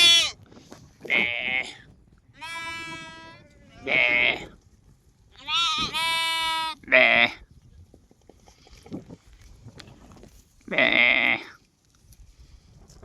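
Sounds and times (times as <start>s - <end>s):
lamb bleating: 0.0s - 0.4s, 2.4s - 4.5s, 5.4s - 7.4s, 10.7s - 11.5s.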